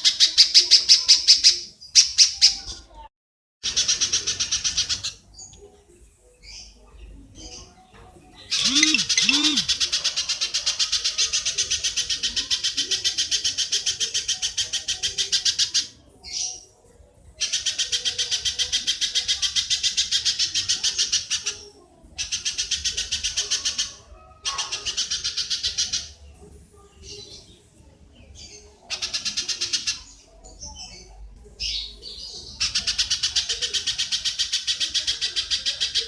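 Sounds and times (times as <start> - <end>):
faint single calls: 8.5 - 9.8
animal chattering calls: 8.5 - 12.8.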